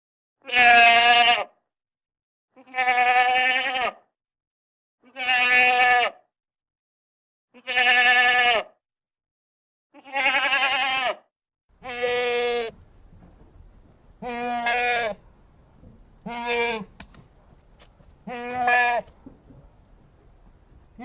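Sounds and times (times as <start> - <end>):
goat bleating: 0.4 - 1.5, 2.6 - 4.0, 5.0 - 6.2, 7.6 - 8.7, 10.0 - 11.2, 11.8 - 12.8, 14.2 - 15.2, 16.2 - 17.1, 17.8 - 19.2.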